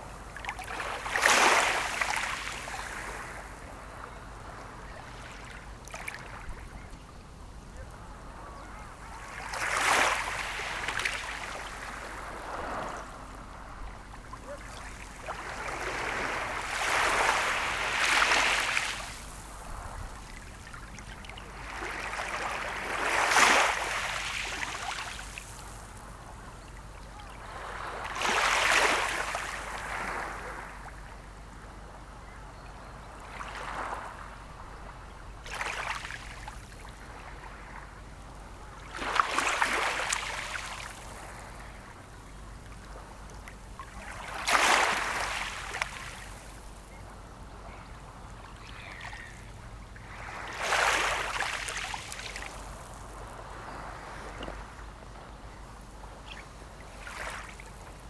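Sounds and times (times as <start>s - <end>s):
sea waves breaking: 0.0s - 3.5s, 9.1s - 26.1s, 27.4s - 30.8s, 38.8s - 42.0s, 42.8s - 46.7s, 47.6s - 58.0s.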